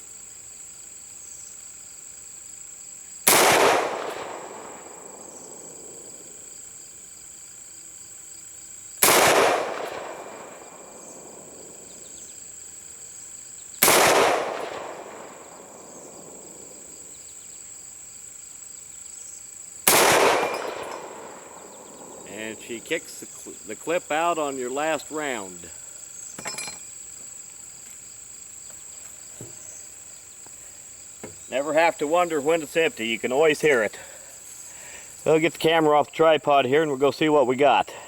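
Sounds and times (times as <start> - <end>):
crickets chirping: 0.0 - 38.0
rifle shots echoing: 3.3 - 6.5, 9.0 - 12.3, 13.8 - 17.1, 19.8 - 25.5.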